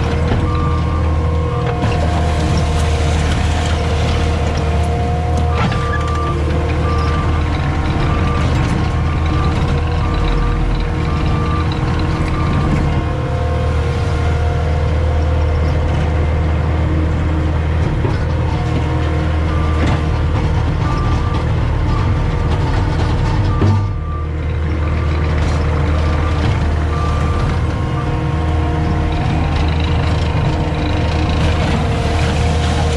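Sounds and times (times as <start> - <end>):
diesel engine running: 0.0 - 32.9.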